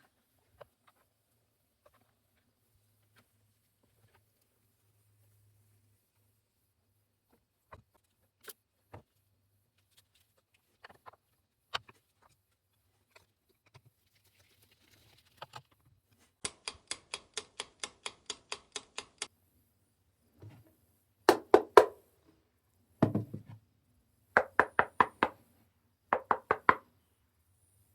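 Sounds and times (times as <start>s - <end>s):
knocking on hollow wooden stock: 21.3s - 22.0s, 23.0s - 23.5s, 24.4s - 25.4s, 26.2s - 26.8s.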